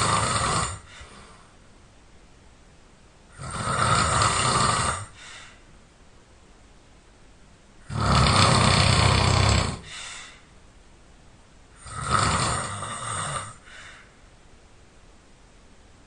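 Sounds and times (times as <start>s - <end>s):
person snoring loudly: 0.0s - 1.3s, 3.3s - 5.2s, 7.8s - 10.1s, 11.8s - 13.9s
quiet breath: 0.0s - 1.7s, 4.9s - 5.8s, 8.5s - 10.6s, 12.7s - 14.4s.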